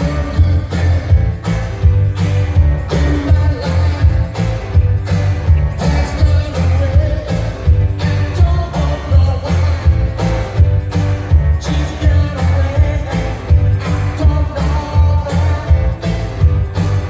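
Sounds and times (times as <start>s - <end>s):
person singing: 0.0s - 1.7s, 2.7s - 4.8s, 5.6s - 10.4s, 11.5s - 16.4s
bass beat: 0.0s - 17.0s
loud pop music: 0.0s - 17.0s.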